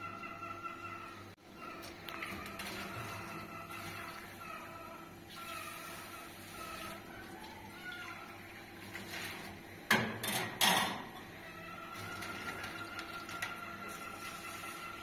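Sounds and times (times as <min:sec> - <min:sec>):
metal clanking on metal: 0:09.9 - 0:11.2.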